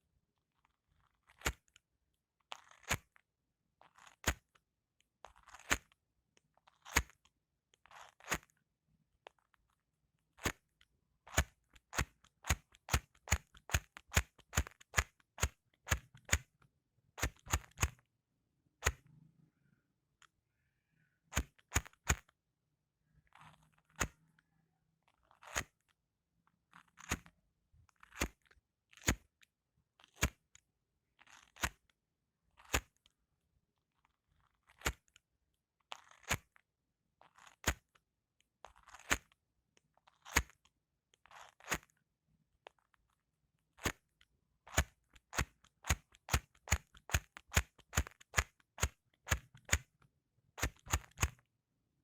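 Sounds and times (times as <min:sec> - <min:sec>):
lighter wheel scratchy rasp: 0:17.2 - 0:18.0, 0:44.8 - 0:49.9, 0:50.6 - 0:51.4.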